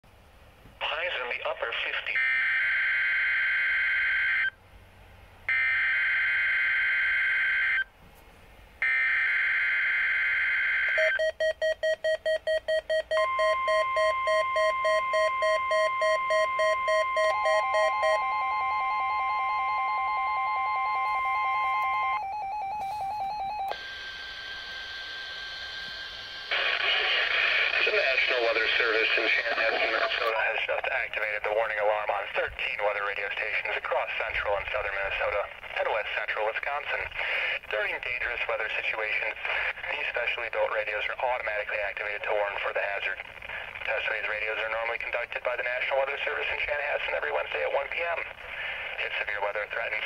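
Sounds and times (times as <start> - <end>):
steady warning alarm tone: 2.2 - 4.6, 5.5 - 7.9, 8.8 - 26.8
rapidly pulsing alert beeps: 11.0 - 23.7.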